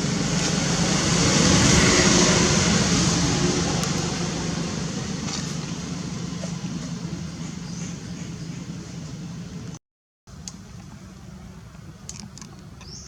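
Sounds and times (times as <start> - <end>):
steady rushing noise: 0.0 - 7.4
low hum: 0.0 - 12.1.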